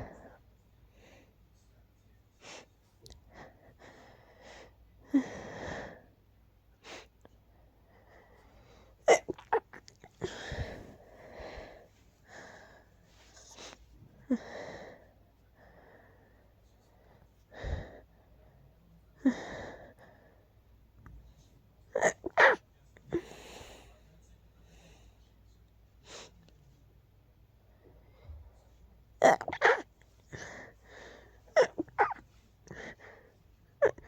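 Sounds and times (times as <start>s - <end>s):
person sneezing: 22.0s - 22.6s, 29.2s - 30.5s, 31.6s - 32.2s.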